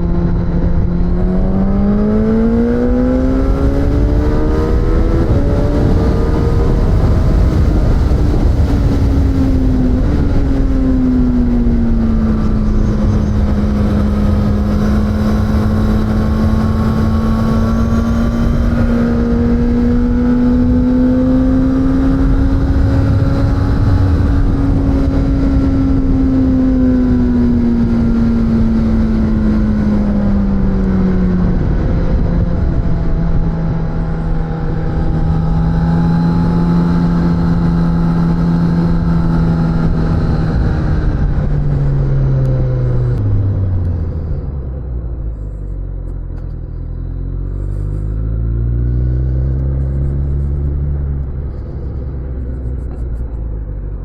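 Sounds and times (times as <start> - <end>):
motorcycle engine revving: 0.0 - 54.0
wind rumble on microphone: 0.0 - 54.0.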